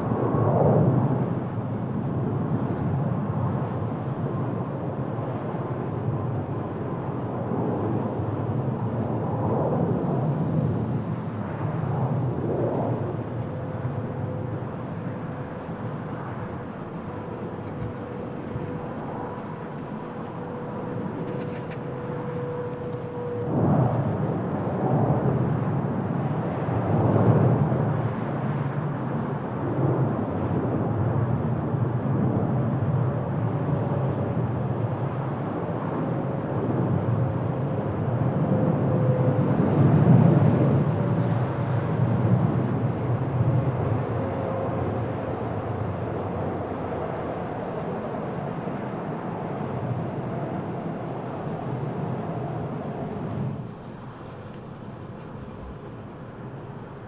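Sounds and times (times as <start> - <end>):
jet engines rumbling: 0.0 - 57.0
faint steady whine: 1.0 - 26.7.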